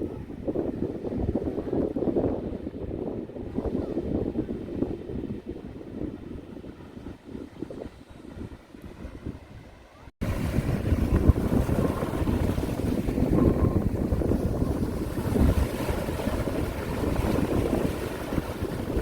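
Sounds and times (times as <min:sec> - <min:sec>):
wind buffeting microphone: 0:00.0 - 0:19.0
sea waves washing: 0:05.2 - 0:19.0.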